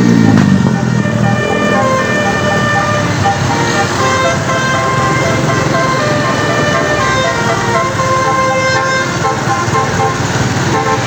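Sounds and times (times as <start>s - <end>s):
bus engine running: 0.0s - 11.0s
multi-tone air horn melody: 0.0s - 11.0s.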